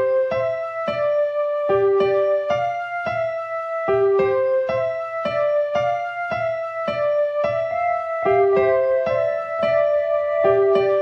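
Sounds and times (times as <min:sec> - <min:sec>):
keyboard melody: 0:00.0 - 0:11.0.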